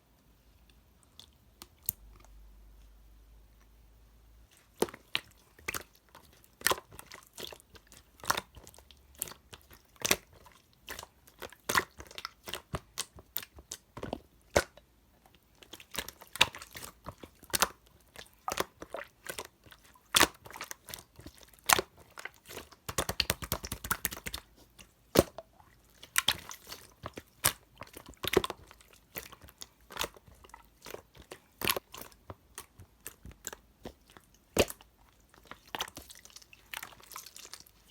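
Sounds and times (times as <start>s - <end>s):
slime squished by hand: 4.5s - 37.9s.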